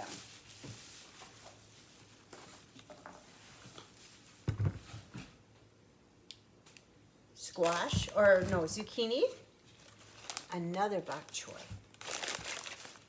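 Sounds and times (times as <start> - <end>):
produce rustling: 0.0 - 5.4, 7.5 - 13.0
dull thump of object set down: 4.5 - 4.9.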